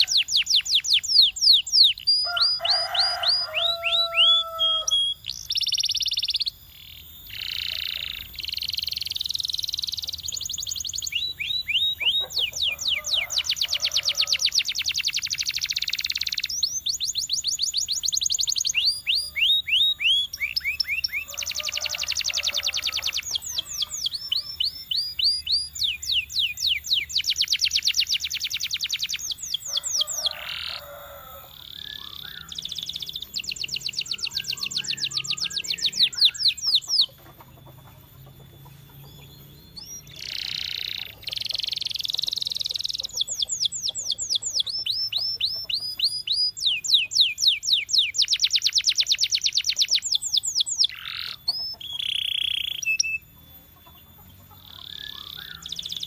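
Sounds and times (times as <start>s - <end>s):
canary singing trills: 0.0s - 56.0s.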